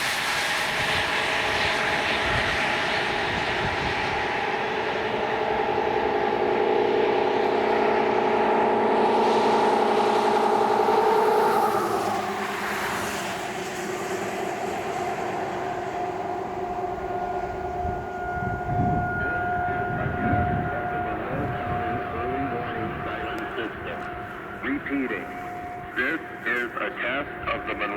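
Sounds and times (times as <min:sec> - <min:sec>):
outdoor warning siren: 0:00.0 - 0:27.9
road traffic rumble: 0:00.0 - 0:27.9.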